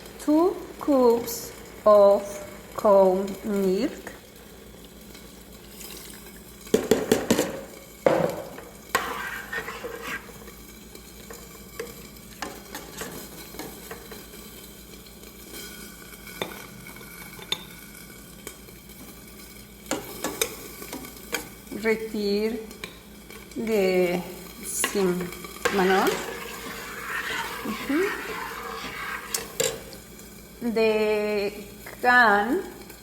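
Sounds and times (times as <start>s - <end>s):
spoon stirring rice in a pot: 8.4s - 14.3s, 19.9s - 21.6s, 22.7s - 30.1s.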